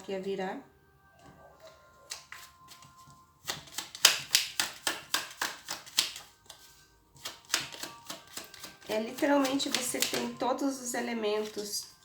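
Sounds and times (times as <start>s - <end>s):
cards being shuffled: 2.1s - 10.4s, 11.4s - 12.0s.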